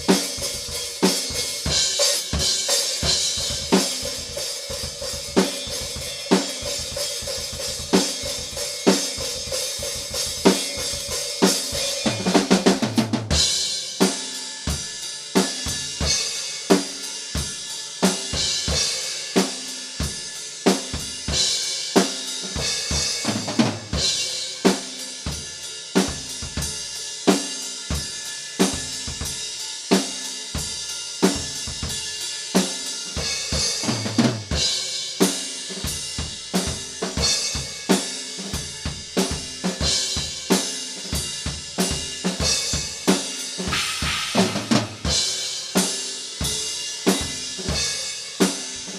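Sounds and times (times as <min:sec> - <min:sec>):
drum kit groove: 0:00.0 - 0:48.9
drum fill: 0:43.6 - 0:45.5
cymbal crashes: 0:43.6 - 0:47.3.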